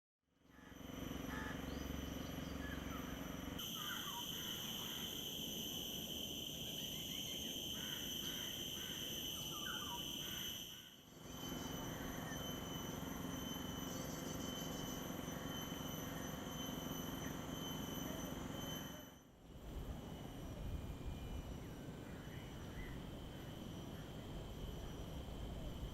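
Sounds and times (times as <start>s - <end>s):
insects shrill drone: 0.4s - 25.9s.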